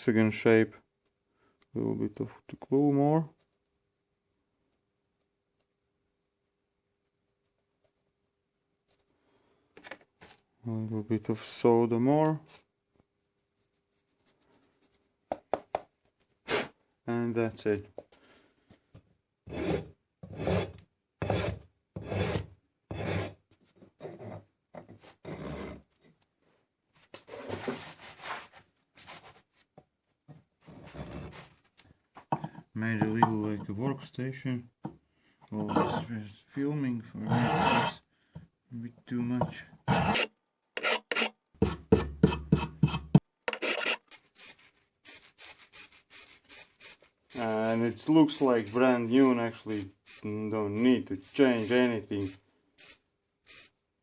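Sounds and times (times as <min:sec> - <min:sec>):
file rasping on plastic: 0:19.5 - 0:23.4, 0:39.9 - 0:41.3, 0:42.8 - 0:44.0
hand file rasping on plastic: 0:39.9 - 0:41.3, 0:43.5 - 0:44.0.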